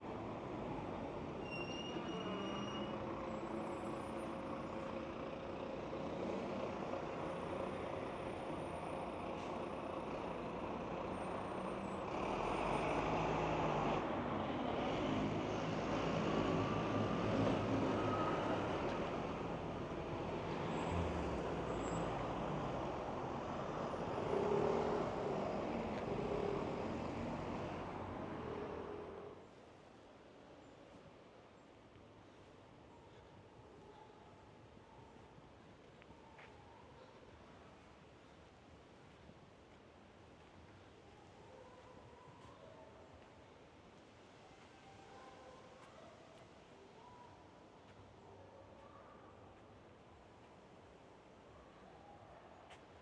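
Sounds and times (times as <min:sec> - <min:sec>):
engine and brake whines: 0:00.2 - 0:29.4
heavy vehicles passing: 0:02.2 - 0:29.4.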